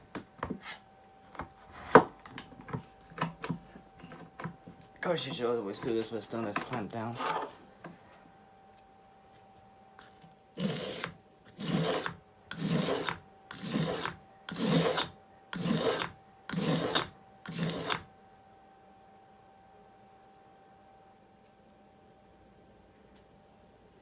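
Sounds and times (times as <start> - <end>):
faint high hum: 0.0 - 24.0
blade rasping on whetstone: 7.1 - 7.6, 10.6 - 18.1.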